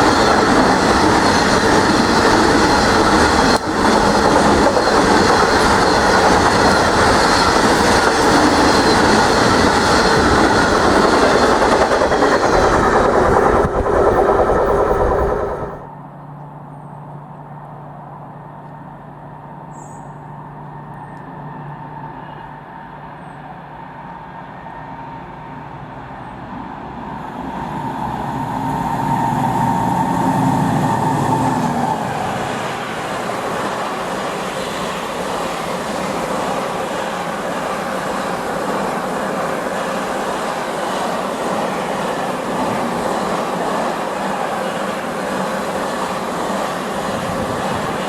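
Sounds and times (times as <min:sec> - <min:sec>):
wagon wheels rumbling on rail: 0:00.0 - 0:15.8
locomotive hum and whine: 0:00.0 - 0:48.0.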